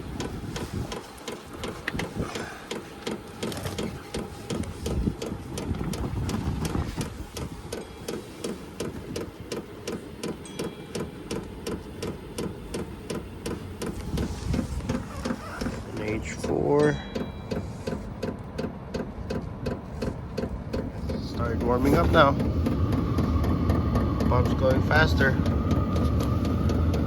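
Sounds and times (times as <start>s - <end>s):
blower fan hum: 0.0s - 27.0s
fuel pump ticking: 0.0s - 27.0s.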